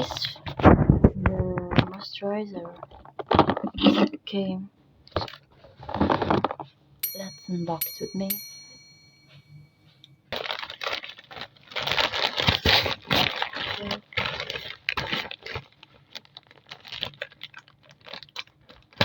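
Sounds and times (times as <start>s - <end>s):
plastic packaging torn and crinkling: 10.3s - 19.0s.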